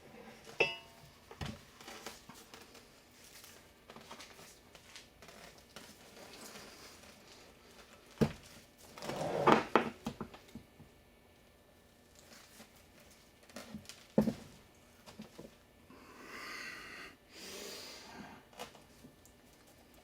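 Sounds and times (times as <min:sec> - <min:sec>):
short breathy hisses: 0:16.2 - 0:18.4.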